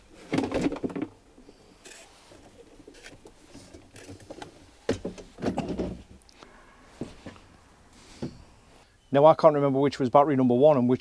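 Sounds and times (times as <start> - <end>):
wiring rustling and knocking: 0.2 - 1.2, 1.9 - 6.2.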